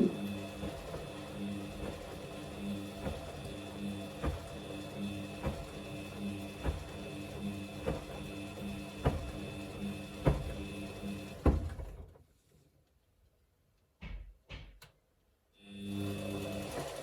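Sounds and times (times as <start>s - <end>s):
washing machine motor hum: 0.0s - 12.2s, 15.6s - 17.0s.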